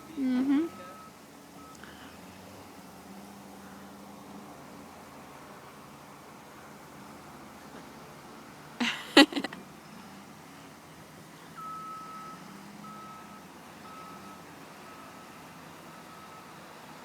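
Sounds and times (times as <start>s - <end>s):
vehicle backup alarm beeping: 0.0s - 4.1s, 11.6s - 17.0s.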